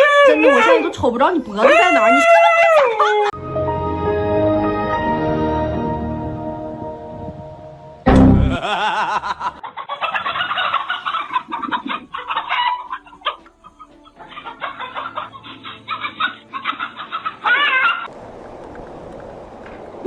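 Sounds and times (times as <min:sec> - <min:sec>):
chickens clucking and squawking: 0:00.0 - 0:03.4, 0:09.5 - 0:18.1.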